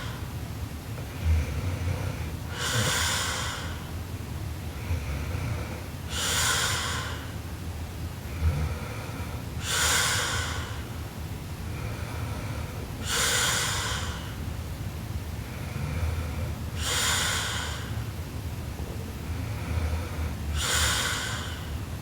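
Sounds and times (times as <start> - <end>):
woman snoring: 1.2 - 3.8, 19.5 - 21.6.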